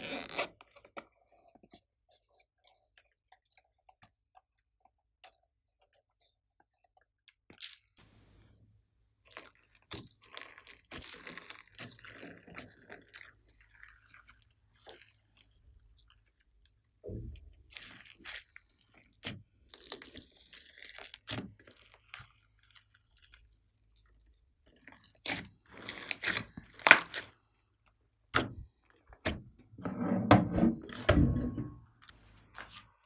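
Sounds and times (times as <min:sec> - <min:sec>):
slime squished by hand: 0:25.0 - 0:27.3.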